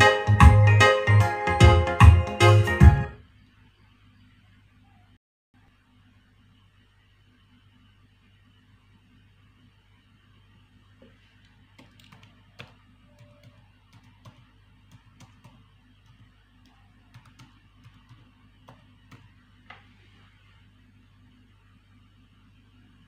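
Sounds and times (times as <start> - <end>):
low electrical hum: 3.0 - 23.0
mouse and keyboard clicking: 11.8 - 19.3.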